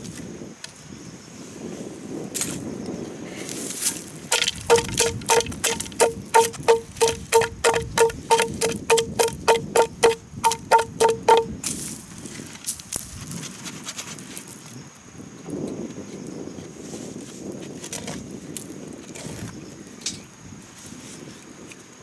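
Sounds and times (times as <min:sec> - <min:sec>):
hollow knocks on bamboo: 0:04.3 - 0:11.5.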